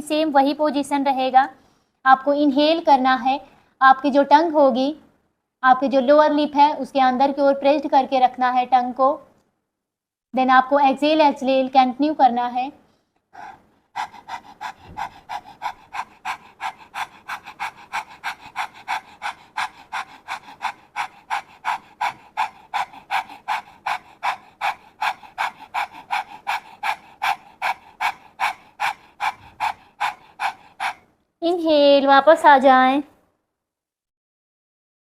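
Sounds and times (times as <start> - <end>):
woman panting rhythmically: 12.8 - 31.8.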